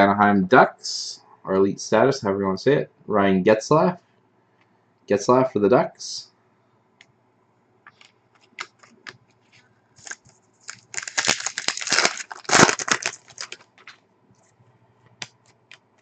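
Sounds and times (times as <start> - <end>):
crinkly packaging rustle: 8.0 - 14.0.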